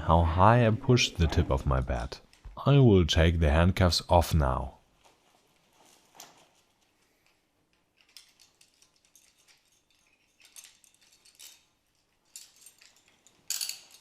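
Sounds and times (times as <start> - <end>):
handcuffs clicking and jingling: 7.2 - 14.0.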